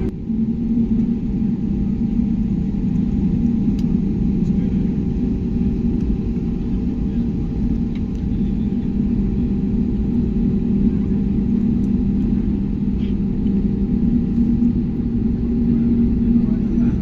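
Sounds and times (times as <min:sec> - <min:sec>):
engine and airflow drone: 0:00.0 - 0:17.0
low hum: 0:00.0 - 0:17.0.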